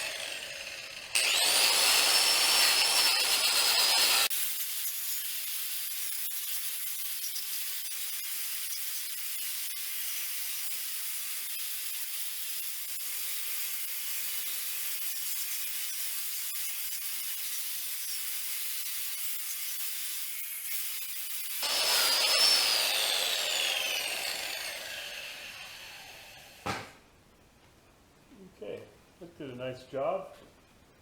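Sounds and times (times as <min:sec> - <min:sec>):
wire wheel scouring metal: 0:00.0 - 0:05.3, 0:21.6 - 0:26.6.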